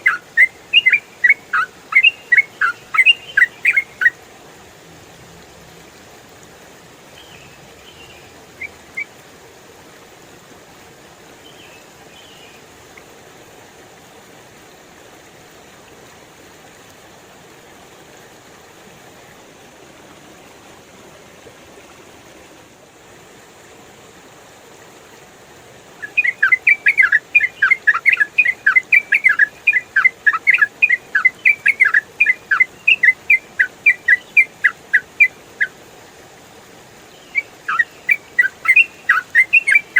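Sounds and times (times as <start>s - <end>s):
faint short bird calls: 0.0s - 4.1s, 25.9s - 35.2s, 37.2s - 39.9s
bird chattering song: 0.0s - 4.2s, 26.0s - 35.7s, 37.2s - 39.9s
steady background hiss: 0.0s - 39.9s.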